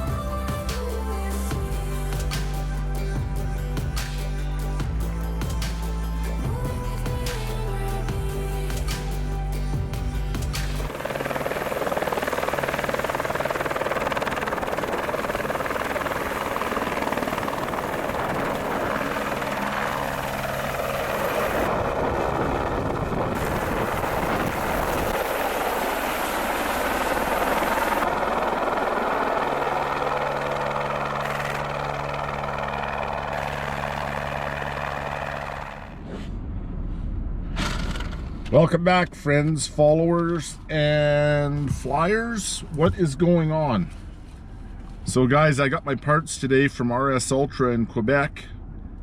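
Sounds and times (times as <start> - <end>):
paramotor engine and propeller: 6.5 - 38.5
rushing air: 20.9 - 28.2.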